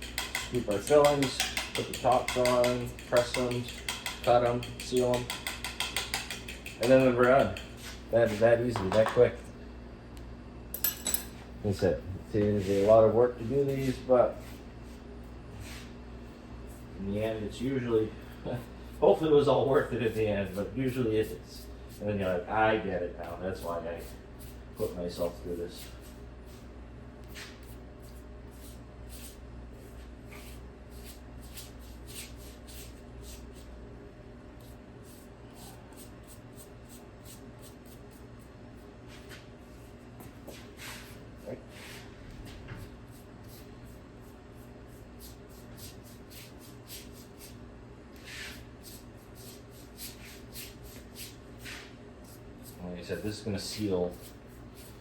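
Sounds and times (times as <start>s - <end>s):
utensils clicking and tapping: 0.0s - 8.0s
steady low hum: 0.0s - 55.0s.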